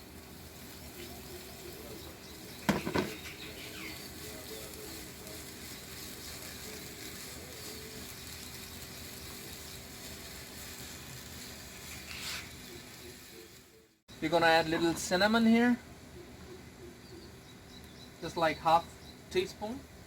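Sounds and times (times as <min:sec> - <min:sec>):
sizzling in a pan: 0:00.0 - 0:15.7.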